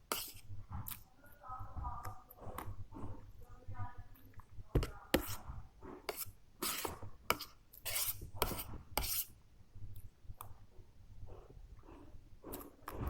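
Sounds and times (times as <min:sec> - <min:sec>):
spoon scraping on plate: 0:00.0 - 0:01.0, 0:04.8 - 0:09.4.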